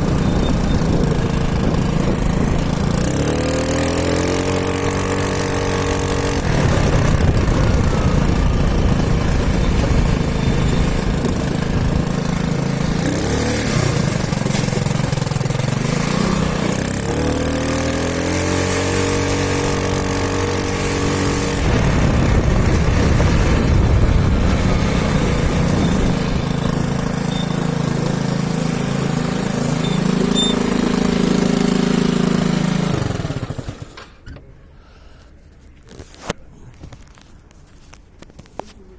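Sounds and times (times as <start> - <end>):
small motorcycle engine revving: 0.0 - 34.2.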